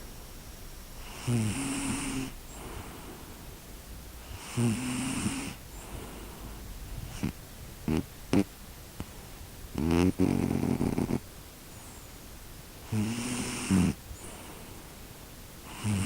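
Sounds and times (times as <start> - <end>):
person snoring: 1.1 - 2.7, 4.4 - 5.6, 9.8 - 11.2, 12.9 - 14.0, 15.7 - 16.0.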